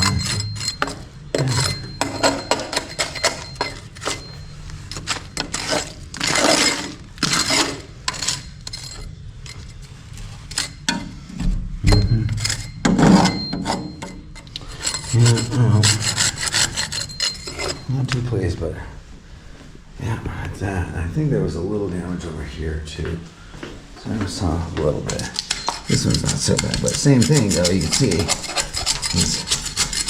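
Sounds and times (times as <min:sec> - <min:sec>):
hand scraping wall compound: 0:00.0 - 0:11.2, 0:11.9 - 0:18.5, 0:24.8 - 0:30.0.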